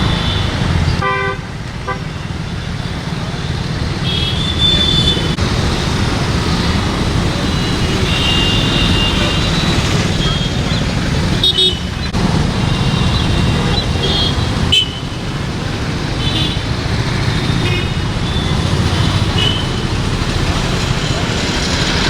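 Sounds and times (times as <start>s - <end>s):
road traffic rumble: 0.0s - 22.0s
vehicle horn toots: 7.6s - 10.8s, 12.7s - 15.2s, 19.2s - 19.9s.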